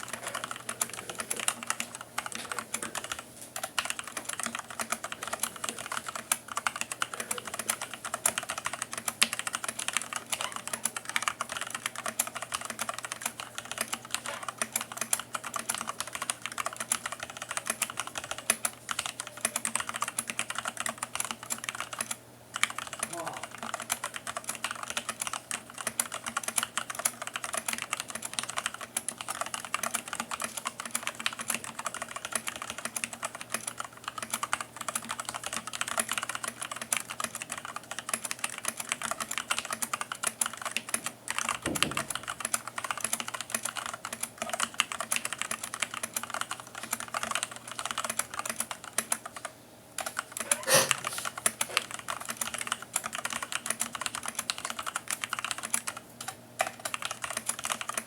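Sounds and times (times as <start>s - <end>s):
fast typing on mechanical keyboard: 0.0s - 50.6s, 51.2s - 58.0s
deeper key thud: 41.6s - 42.2s.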